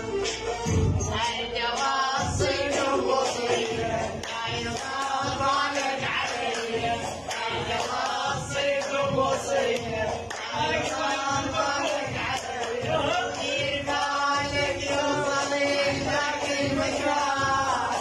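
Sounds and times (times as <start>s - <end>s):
percussion beating: 0.0s - 18.0s.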